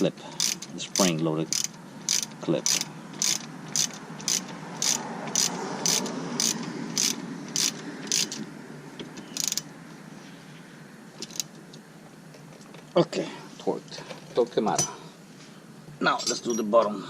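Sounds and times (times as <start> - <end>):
ratchet wrench clicking: 0.4 - 8.4, 9.3 - 9.7, 11.2 - 11.5.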